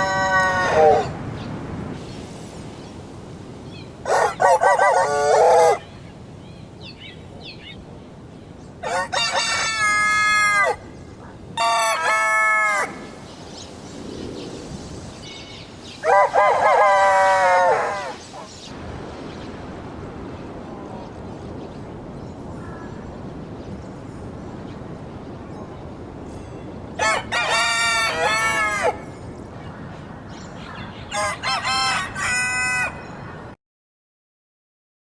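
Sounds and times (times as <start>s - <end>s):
rooster crowing: 0.0s - 1.1s, 4.1s - 5.8s, 8.8s - 10.8s, 11.6s - 13.0s, 16.0s - 18.2s, 27.0s - 29.0s, 31.1s - 33.1s.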